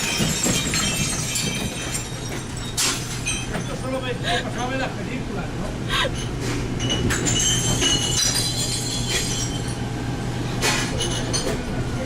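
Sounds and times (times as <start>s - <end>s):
glass clinking: 0.0s - 4.1s, 6.8s - 9.8s, 10.8s - 11.6s.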